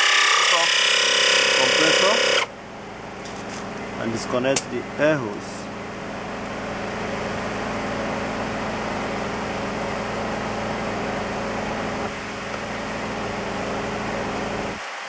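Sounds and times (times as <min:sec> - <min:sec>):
air compressor buzzing hum: 0:00.0 - 0:15.0.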